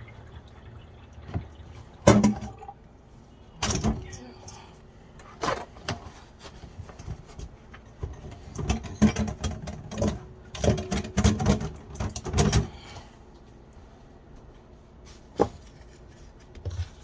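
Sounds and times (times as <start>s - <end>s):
kitchen knocks and clatters: 1.3s - 2.7s, 3.6s - 4.2s, 5.4s - 12.9s.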